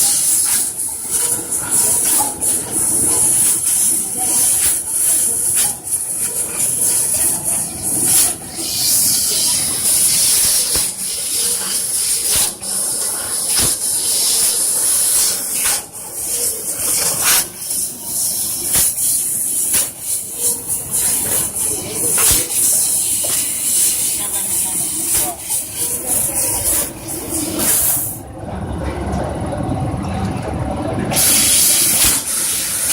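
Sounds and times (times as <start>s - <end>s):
laser cutter gas hiss: 0.0s - 28.2s, 31.1s - 32.9s.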